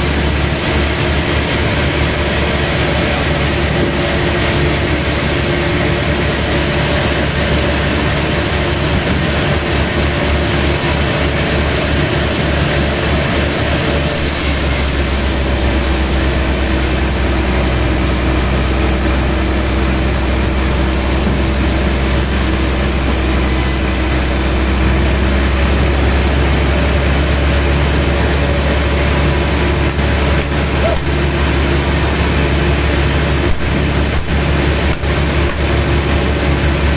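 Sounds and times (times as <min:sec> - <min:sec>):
heavy engine drone: 0:00.0 - 0:36.9
sawmill machinery running: 0:00.0 - 0:36.9.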